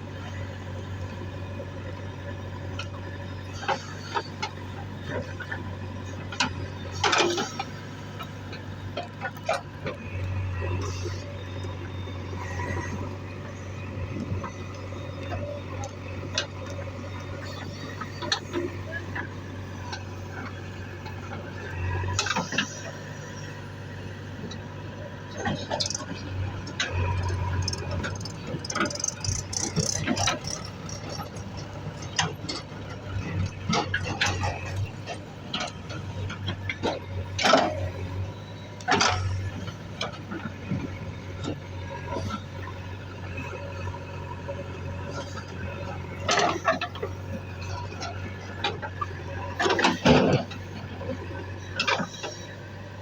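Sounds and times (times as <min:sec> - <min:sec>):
heavy machinery diesel engine: 0:00.0 - 0:53.0.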